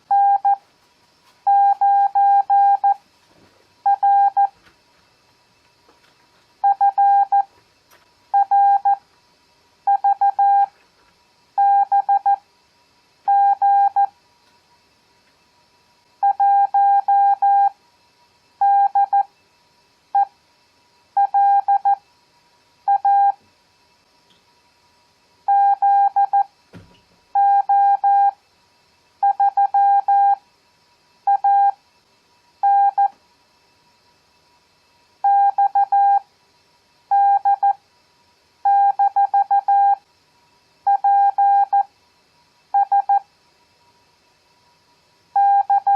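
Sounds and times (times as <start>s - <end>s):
morse code beeps: 0.1s - 0.6s, 1.5s - 3.0s, 3.9s - 4.5s, 6.6s - 7.5s, 8.4s - 9.0s, 9.9s - 10.7s, 11.6s - 12.4s, 13.3s - 14.1s, 18.6s - 19.2s, 22.9s - 23.4s, 31.3s - 31.8s, 32.6s - 33.1s, 35.3s - 36.2s, 37.1s - 37.8s, 38.7s - 40.0s, 40.9s - 41.8s, 42.8s - 43.2s, 45.4s - 45.9s.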